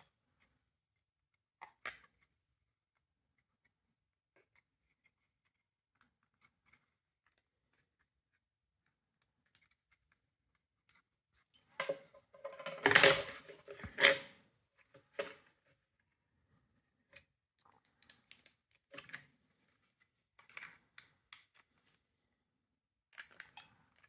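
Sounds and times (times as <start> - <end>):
small plastic parts clicking and rattling: 11.8 - 14.2, 17.7 - 19.3.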